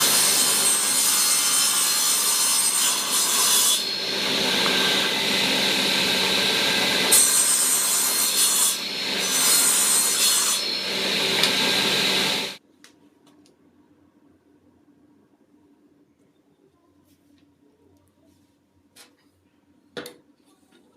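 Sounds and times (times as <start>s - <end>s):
power tool cutting wood: 0.0s - 12.6s.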